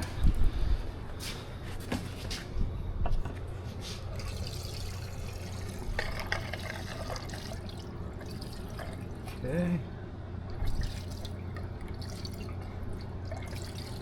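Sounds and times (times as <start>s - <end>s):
gasoline trickling into fuel tank: 3.8s - 9.4s, 10.5s - 14.0s.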